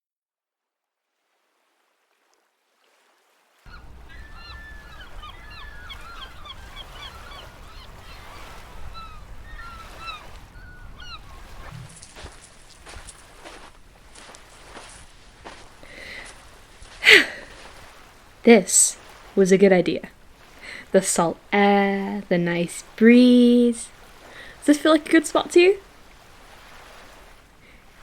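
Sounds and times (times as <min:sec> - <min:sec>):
seagulls calling: 0:03.7 - 0:25.6
wind and surf rumble: 0:03.7 - 0:28.0
footsteps: 0:11.4 - 0:18.2.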